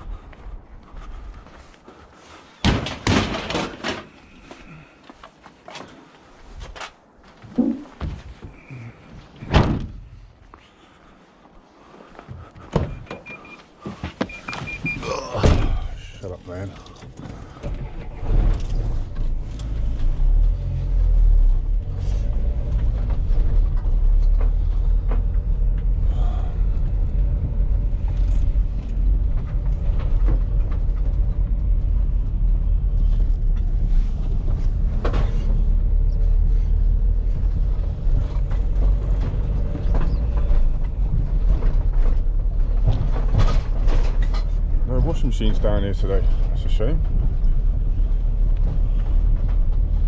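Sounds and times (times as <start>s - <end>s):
van engine and road rumble: 0.0s - 50.0s.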